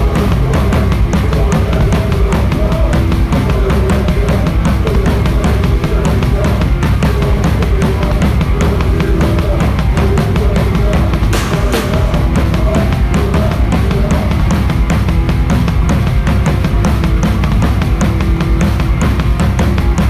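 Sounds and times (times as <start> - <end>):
distorted guitar and bass riffs: 0.0 - 20.0
drum kit fast beat: 0.0 - 20.0
crashing cymbals: 11.4 - 12.6.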